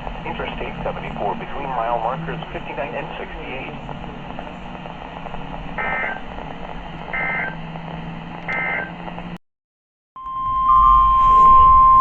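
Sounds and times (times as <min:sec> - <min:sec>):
radio static hiss and hum: 0:00.0 - 0:09.4
warbling data bursts: 0:04.7 - 0:06.3, 0:07.1 - 0:07.7
warning alarm tone: 0:05.8 - 0:06.2, 0:07.1 - 0:07.6, 0:08.5 - 0:09.0, 0:10.2 - 0:12.0.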